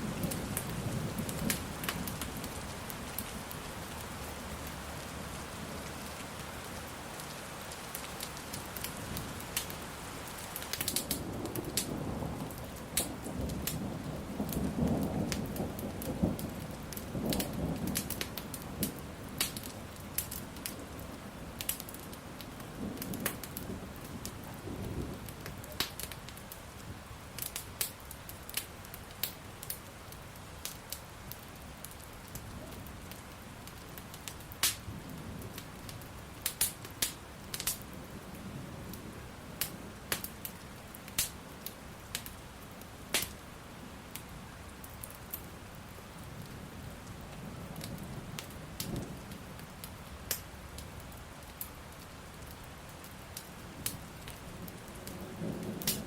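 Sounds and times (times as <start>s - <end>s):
rain hissing: 0.0s - 56.0s
wood fire crackling and popping: 0.1s - 4.8s, 5.8s - 24.6s, 25.2s - 38.3s, 38.9s - 43.5s, 44.1s - 56.0s
distant thunder rumble: 10.9s - 19.4s, 53.6s - 56.0s.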